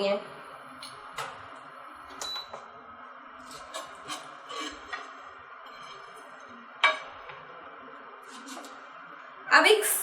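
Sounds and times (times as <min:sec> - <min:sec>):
utensils clinking against pan: 0:03.4 - 0:06.2.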